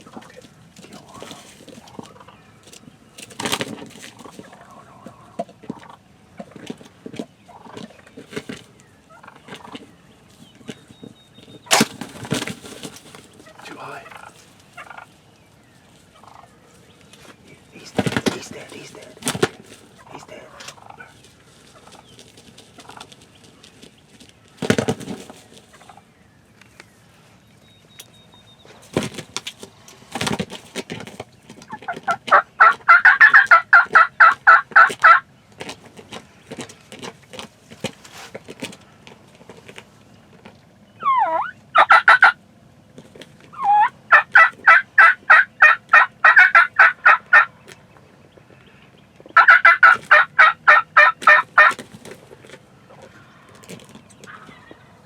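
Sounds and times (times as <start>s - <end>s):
wild turkeys calling: 0.0s - 37.4s, 40.8s - 55.0s
dull thumps: 17.9s - 18.6s.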